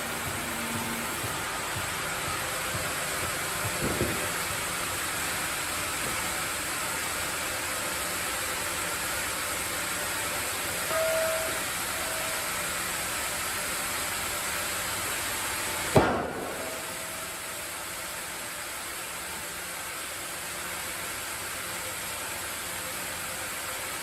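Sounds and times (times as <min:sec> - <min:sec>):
sawmill machinery hissing: 0:00.0 - 0:24.0
sharp knock: 0:16.0 - 0:17.2.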